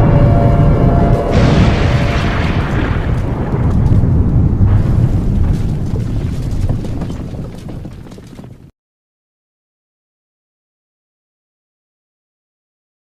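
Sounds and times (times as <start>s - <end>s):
hissing blast: 0.0s - 6.5s
deep explosion rumble: 0.0s - 8.7s.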